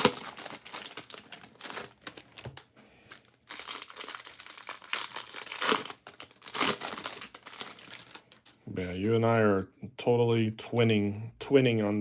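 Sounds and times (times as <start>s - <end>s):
plastic crinkling and rustling: 0.0s - 8.6s.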